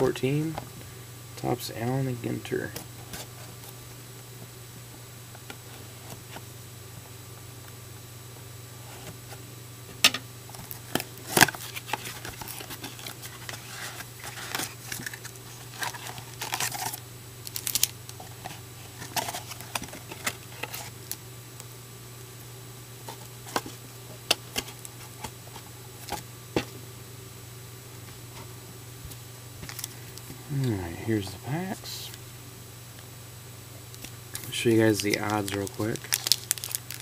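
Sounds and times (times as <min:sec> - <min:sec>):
steady low hum: 0:00.0 - 0:37.0
cardboard and wrapping crinkling: 0:10.5 - 0:21.2, 0:34.3 - 0:37.0.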